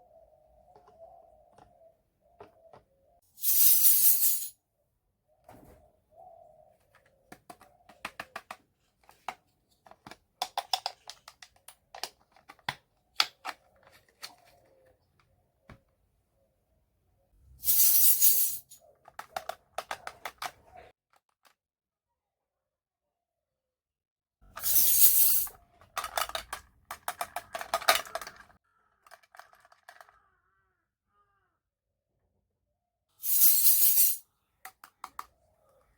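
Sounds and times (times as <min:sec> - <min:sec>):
toy kitchen pieces clicking: 0:06.9 - 0:14.9, 0:17.7 - 0:21.6, 0:24.5 - 0:30.6, 0:33.3 - 0:35.4
small toy pieces clicking and clinking: 0:24.6 - 0:30.2.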